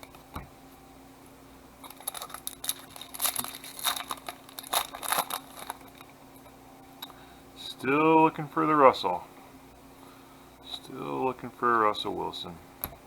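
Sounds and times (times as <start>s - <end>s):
small tearing sounds: 1.8s - 6.0s
plastic wrapper crinkling: 1.8s - 6.1s.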